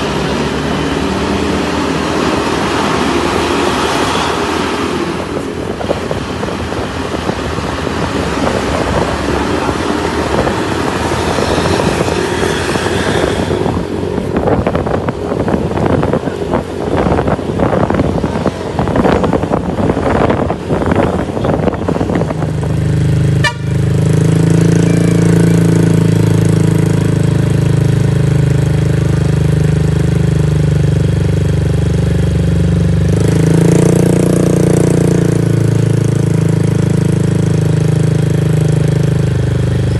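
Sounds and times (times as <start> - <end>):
road traffic passing: 0.0 - 39.9
car horn toots: 23.4 - 24.0.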